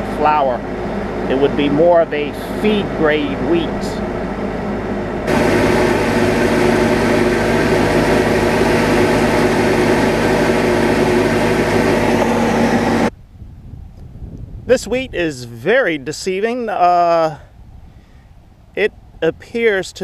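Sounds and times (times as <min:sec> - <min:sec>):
farm machine engine running: 0:00.0 - 0:13.1.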